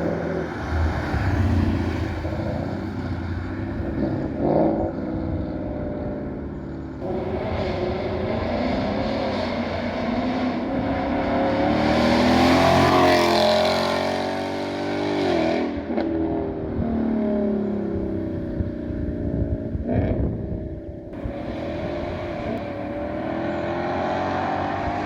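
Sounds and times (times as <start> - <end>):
car engine accelerating: 7.0 - 15.4, 21.2 - 25.0.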